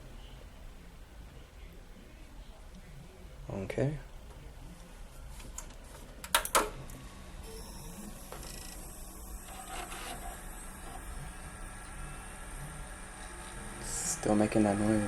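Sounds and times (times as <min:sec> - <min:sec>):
computer low hum: 0:00.0 - 0:15.0
computer high-pitched whine: 0:06.8 - 0:15.0.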